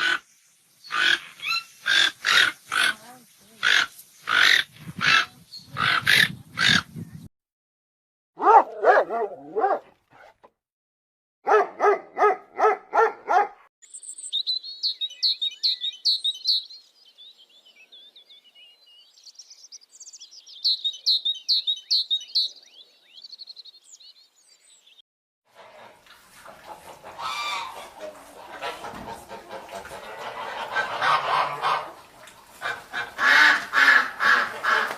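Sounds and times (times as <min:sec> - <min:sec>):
dog barking: 0:08.4 - 0:10.4, 0:11.4 - 0:13.7
small bird chirping rapidly: 0:13.8 - 0:25.0.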